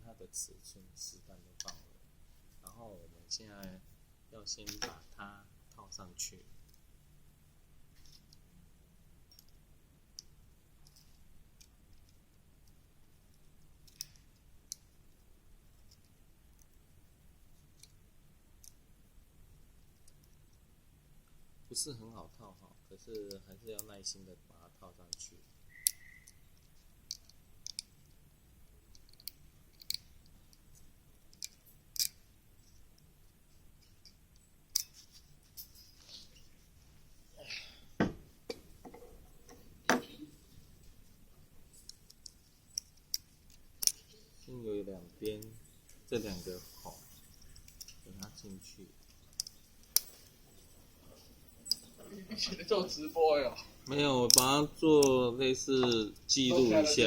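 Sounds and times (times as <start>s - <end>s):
faint clicks of metal ring: 45.2s - 52.5s.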